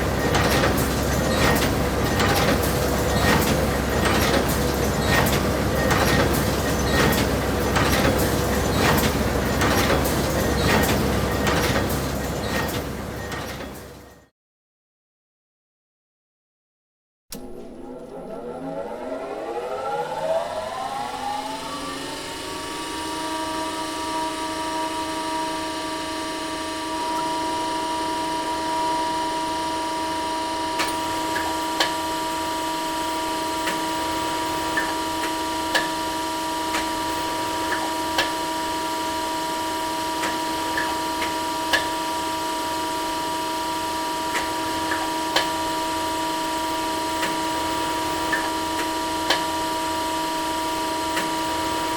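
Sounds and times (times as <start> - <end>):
cutting machine motor whine: 17.3 - 51.9.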